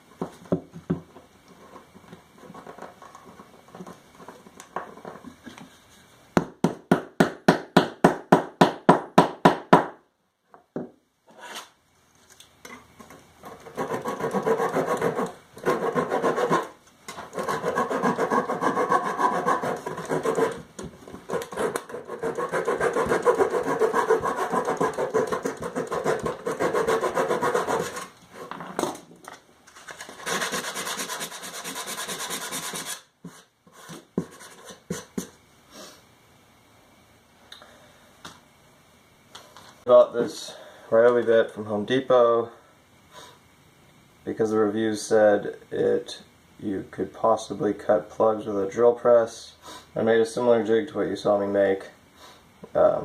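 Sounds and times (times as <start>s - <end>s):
steady rasping on wood: 13.5s - 28.1s, 30.2s - 33.0s
hand tool strokes on wood: 13.5s - 28.5s.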